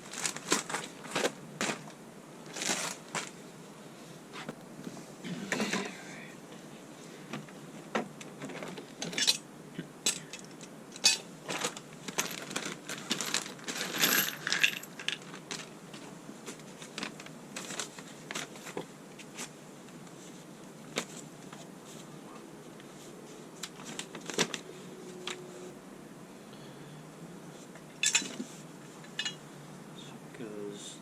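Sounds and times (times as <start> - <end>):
rustling handling noise: 0.0 - 9.4, 10.0 - 25.8, 27.5 - 29.6.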